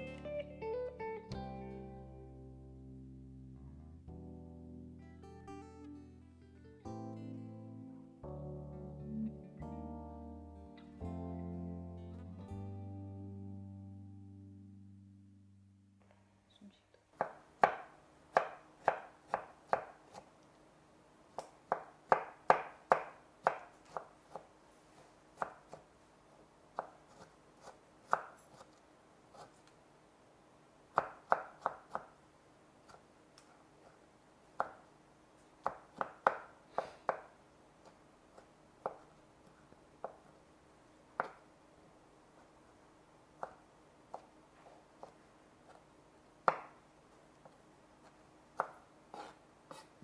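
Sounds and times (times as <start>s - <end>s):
faint steady hum: 0.0s - 50.0s
knife chopping on cutting board: 17.2s - 20.3s, 21.4s - 24.5s, 25.4s - 25.9s, 26.8s - 29.6s, 31.0s - 32.2s, 34.6s - 34.8s, 35.6s - 39.2s, 40.0s - 40.3s, 41.2s - 41.4s, 43.4s - 46.8s, 48.0s - 50.0s.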